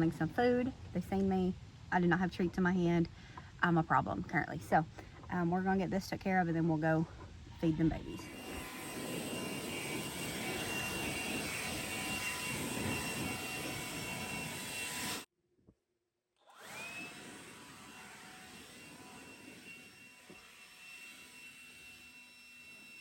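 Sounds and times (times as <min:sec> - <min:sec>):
leaf blower whining: 0:06.5 - 0:15.3, 0:16.4 - 0:23.0.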